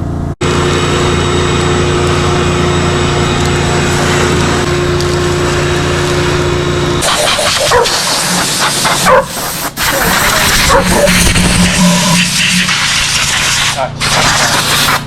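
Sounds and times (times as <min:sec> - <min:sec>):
shop vacuum running: 0:00.0 - 0:15.0
scattered irregular noises: 0:07.0 - 0:15.0.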